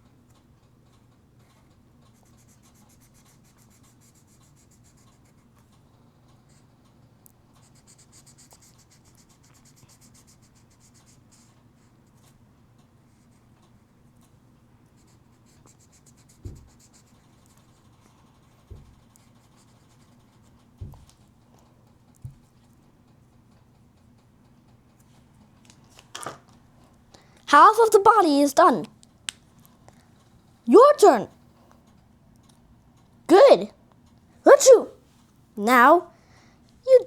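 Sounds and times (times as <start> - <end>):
scribbling on paper: 2.1 - 5.5, 7.6 - 12.4, 14.9 - 21.0
dull thumps: 20.8 - 21.1.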